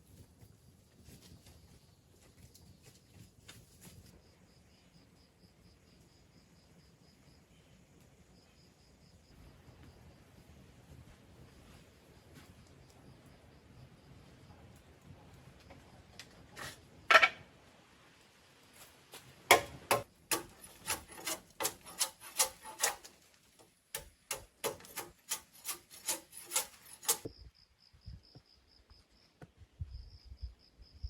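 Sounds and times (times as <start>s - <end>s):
hand sawing wood: 19.5s - 27.3s.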